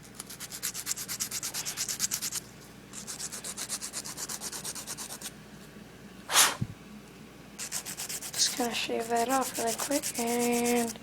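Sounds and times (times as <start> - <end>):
nail file rasping on plastic: 0.1 - 2.4, 3.0 - 5.3, 7.6 - 11.0.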